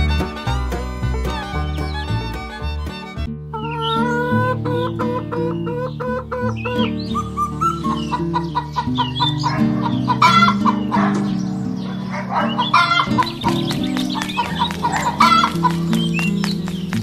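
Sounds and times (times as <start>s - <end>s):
background music held notes: 0.0s - 17.0s
chickens clucking: 3.5s - 17.0s.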